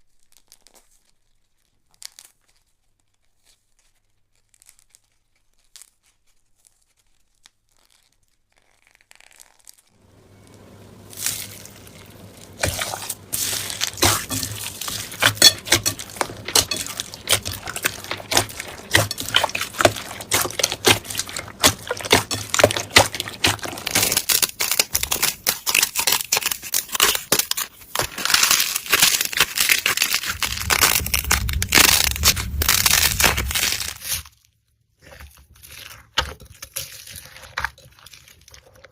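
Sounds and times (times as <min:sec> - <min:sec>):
slime crackling and popping: 0:00.1 - 0:34.3.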